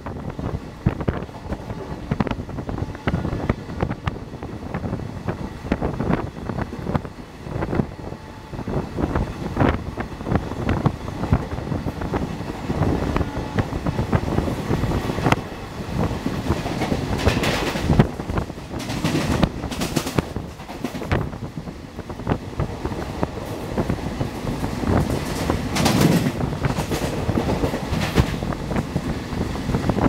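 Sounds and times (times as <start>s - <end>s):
train wheels clattering over joints: 13.0s - 21.4s, 22.7s - 30.0s.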